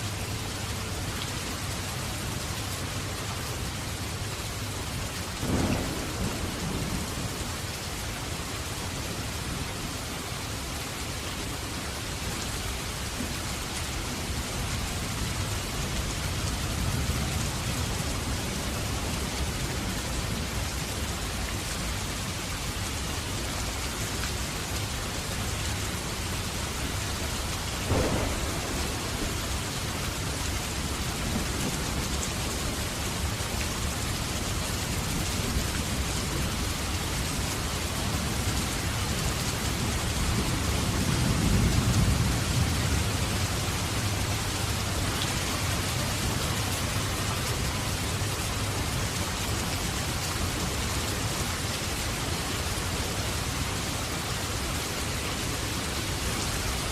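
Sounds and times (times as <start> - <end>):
heavy rain: 0.0 - 56.9
thunder crack: 5.4 - 7.2, 27.9 - 29.8
low rumble of thunder: 5.4 - 9.7, 26.5 - 47.0.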